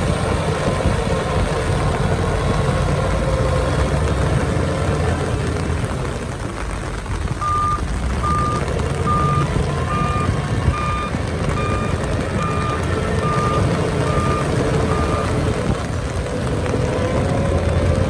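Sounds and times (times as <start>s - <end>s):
heavy engine running: 0.0s - 18.0s
reversing alarm beeping: 7.4s - 15.4s.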